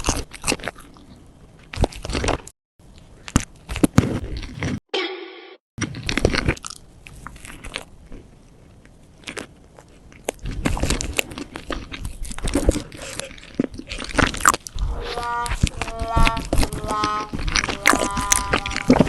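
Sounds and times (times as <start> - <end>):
chewing with small clicks: 5.8 - 14.8.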